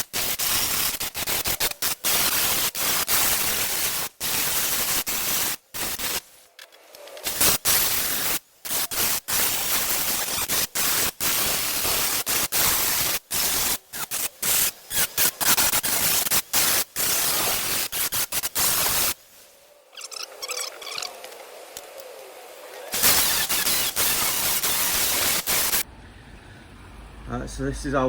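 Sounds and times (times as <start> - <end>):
angle grinder grinding metal: 22.8 - 25.8.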